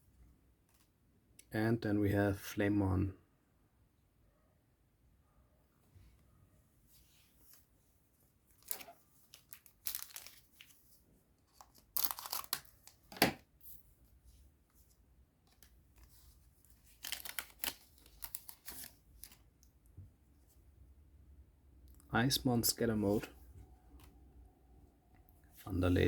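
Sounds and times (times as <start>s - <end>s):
wrapper tearing and crinkling: 8.6s - 10.7s, 11.5s - 13.0s, 16.7s - 19.4s.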